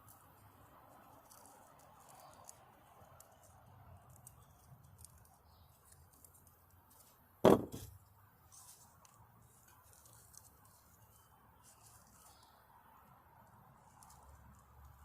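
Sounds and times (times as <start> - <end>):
loud sharp knock: 7.4 - 7.9.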